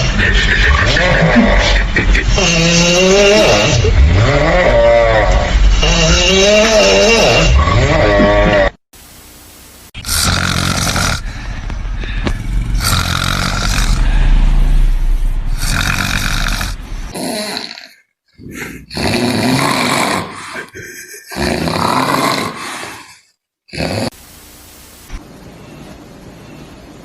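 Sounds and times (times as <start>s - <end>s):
person snoring loudly: 2.3s - 8.8s, 10.0s - 11.4s, 12.0s - 14.9s, 15.5s - 24.2s.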